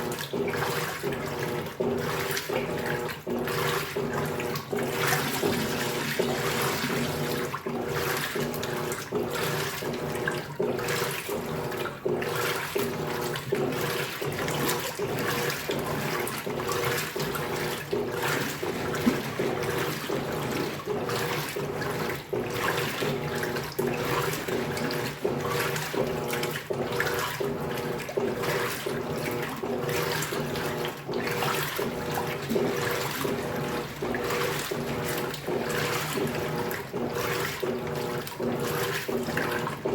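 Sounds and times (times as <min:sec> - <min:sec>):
washing machine motor hum: 0:00.0 - 0:39.9
water and clothes sloshing: 0:00.0 - 0:39.9.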